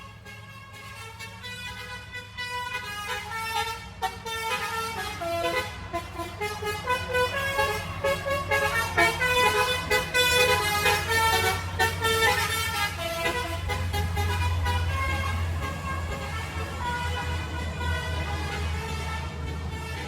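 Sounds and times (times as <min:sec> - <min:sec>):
bus musical horn playing a tune: 0:00.0 - 0:20.0.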